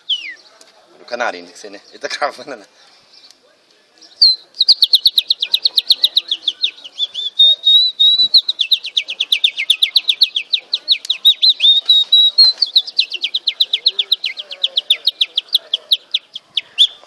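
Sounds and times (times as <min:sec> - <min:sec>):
person whistling bird trills: 0:07.2 - 0:08.5.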